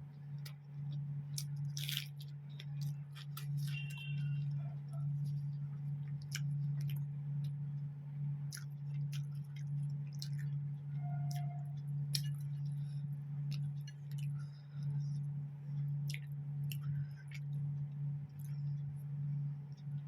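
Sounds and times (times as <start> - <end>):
steady low hum: 0.0 - 20.0
person eating and chewing: 0.4 - 7.6, 8.5 - 10.6, 12.1 - 12.9.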